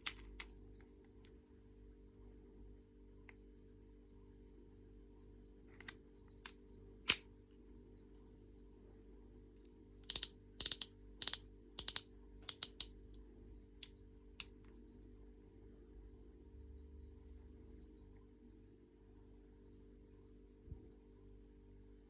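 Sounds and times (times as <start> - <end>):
revolver action clicking: 10.1 - 12.9.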